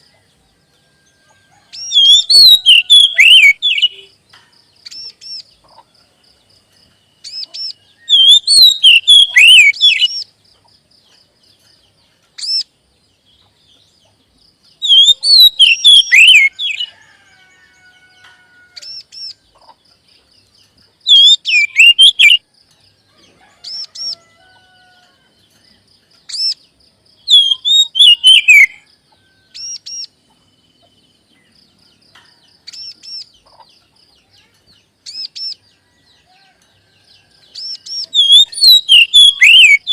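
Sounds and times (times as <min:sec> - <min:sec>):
bird song with sliding whistles: 0:01.8 - 0:04.0, 0:07.3 - 0:10.2, 0:14.9 - 0:16.9, 0:21.1 - 0:22.4, 0:27.3 - 0:28.8, 0:37.6 - 0:39.9
single whistled bird calls: 0:21.1 - 0:22.4, 0:37.6 - 0:39.9.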